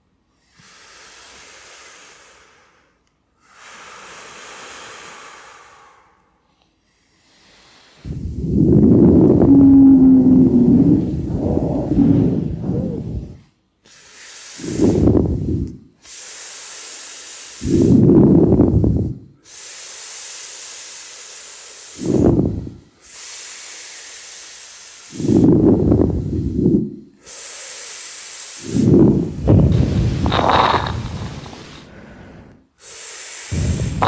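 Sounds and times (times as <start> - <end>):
people breathing in unison: 0.4 - 19.2, 23.6 - 34.0
steady thin hiss: 19.4 - 34.0.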